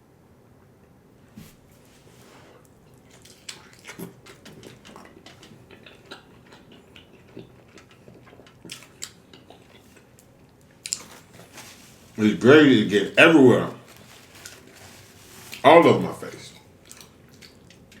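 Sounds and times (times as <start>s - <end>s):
man chewing: 1.8s - 12.2s, 13.7s - 15.7s, 16.5s - 18.0s.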